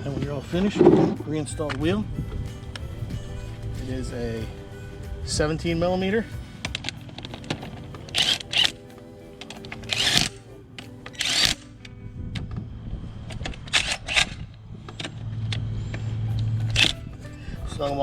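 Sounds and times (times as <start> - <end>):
background music: 0.0 - 18.0.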